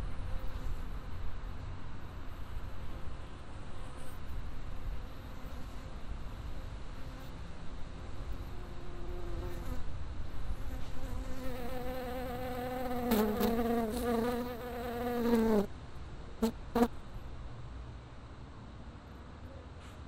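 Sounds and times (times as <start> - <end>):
fly buzzing: 10.6 - 15.7, 16.4 - 16.9.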